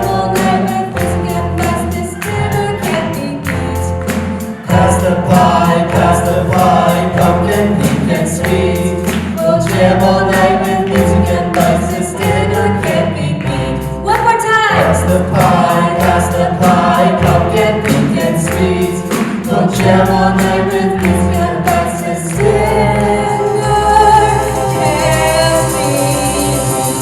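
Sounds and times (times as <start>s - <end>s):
band with drum beat and bass: 0.0s - 13.0s, 13.8s - 27.0s
group of voices singing: 0.0s - 27.0s.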